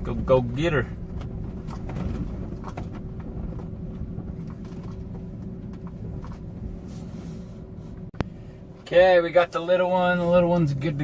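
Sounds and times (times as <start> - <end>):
car engine low rumble: 0.0 - 11.0
faint steady hum: 4.8 - 11.0.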